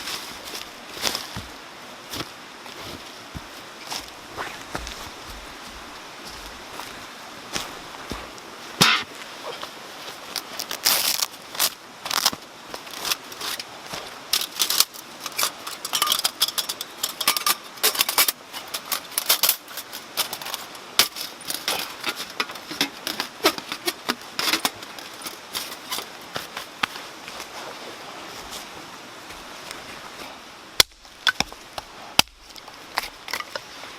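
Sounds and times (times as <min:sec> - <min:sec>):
mountain stream rushing: 0:00.0 - 0:33.9.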